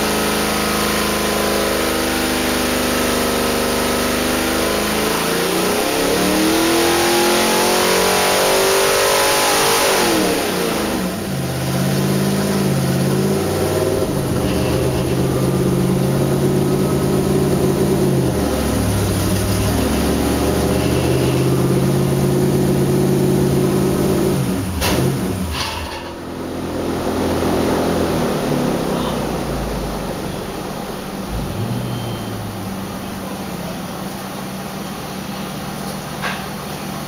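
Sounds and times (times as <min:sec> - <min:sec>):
engine revving under load: 0:00.0 - 0:36.3.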